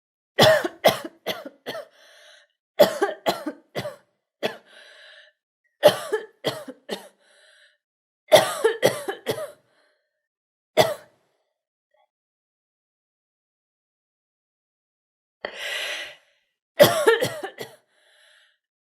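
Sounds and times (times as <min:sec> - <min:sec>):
girl coughing: 0:00.4 - 0:01.9, 0:02.8 - 0:04.6, 0:05.8 - 0:07.1, 0:08.3 - 0:09.6, 0:10.8 - 0:11.1, 0:16.8 - 0:17.8
faint breaths drawn in: 0:01.9 - 0:02.5, 0:04.7 - 0:05.4, 0:07.2 - 0:07.8, 0:17.9 - 0:18.6.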